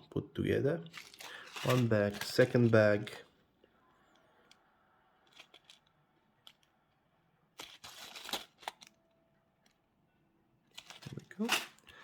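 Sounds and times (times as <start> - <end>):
plastic bag rustling: 0.8 - 3.2, 7.6 - 8.9, 10.7 - 12.0.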